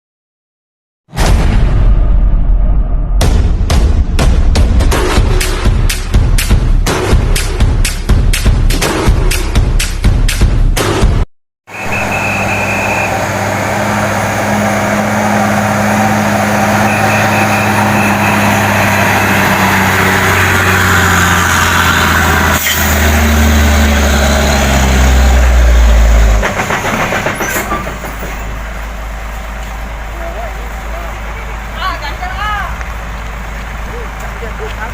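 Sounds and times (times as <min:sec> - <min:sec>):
diesel bus engine humming: 0:11.7 - 0:34.9.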